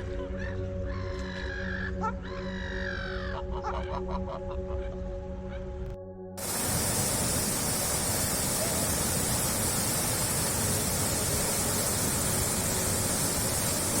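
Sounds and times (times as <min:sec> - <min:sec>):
rush of flowing water: 0:06.4 - 0:14.0.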